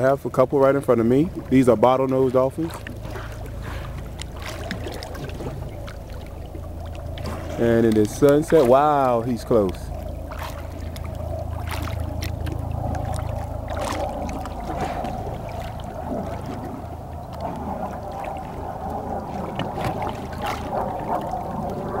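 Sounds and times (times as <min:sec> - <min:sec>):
jet ski engine idling: 0:00.0 - 0:22.0
water splashes: 0:00.0 - 0:22.0.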